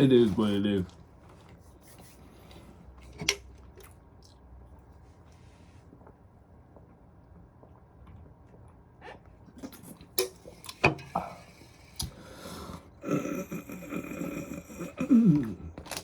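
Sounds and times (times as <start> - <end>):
mouth eating sound: 11.2 - 16.0.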